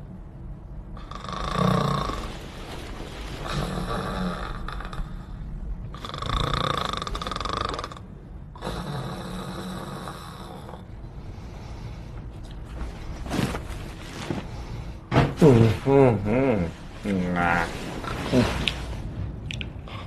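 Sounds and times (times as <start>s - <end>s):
person snoring: 1.0s - 2.5s, 8.6s - 10.9s.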